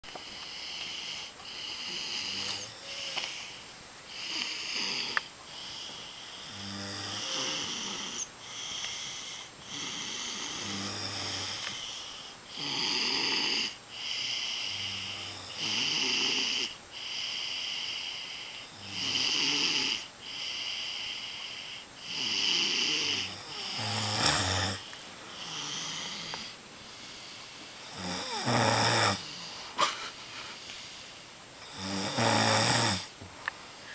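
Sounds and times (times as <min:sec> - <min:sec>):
higher wheezy breaths: 0:00.0 - 0:10.6
deep low snoring: 0:00.3 - 0:03.3, 0:04.1 - 0:05.7, 0:06.3 - 0:11.8, 0:12.5 - 0:13.8, 0:14.6 - 0:16.8, 0:18.7 - 0:20.1, 0:22.0 - 0:26.6, 0:27.8 - 0:29.6, 0:31.6 - 0:33.1.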